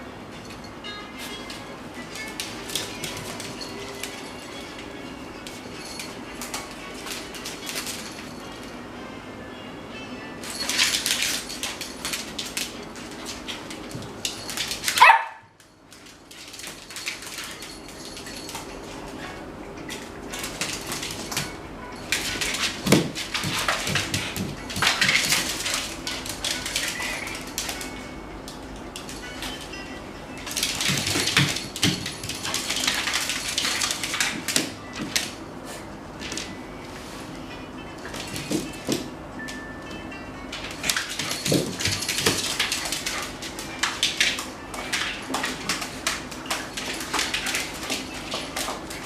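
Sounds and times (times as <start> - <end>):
dogs scuffling and playing: 0.3 - 9.0, 10.4 - 49.0
dogs barking: 14.9 - 15.5
dog yelping: 15.0 - 15.5.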